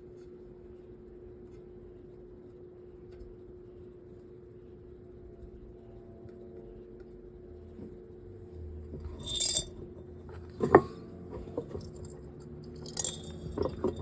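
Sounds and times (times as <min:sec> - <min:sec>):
small metal parts clinking: 0:09.1 - 0:09.8, 0:11.4 - 0:14.0.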